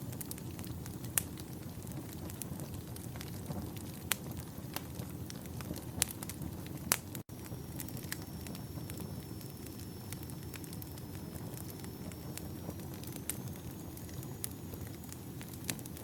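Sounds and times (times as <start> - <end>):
burning logs crackling and popping: 0.0 - 16.0
campfire flame rushing: 0.0 - 16.0
faint high whistle: 7.5 - 15.9.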